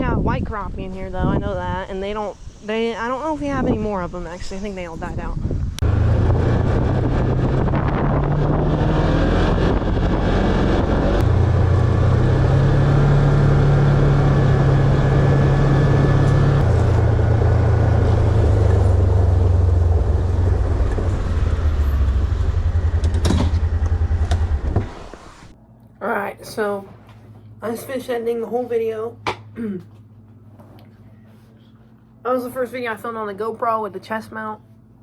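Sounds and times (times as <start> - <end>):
vehicle engine humming: 5.6 - 25.6.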